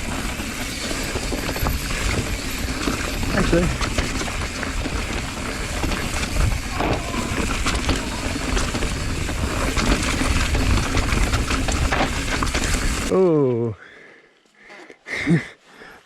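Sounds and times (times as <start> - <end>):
bike rattling and knocking: 0.0 - 13.1
bike tyres crunching on loose dirt: 0.0 - 13.1
wind rumble on microphone: 1.0 - 13.1.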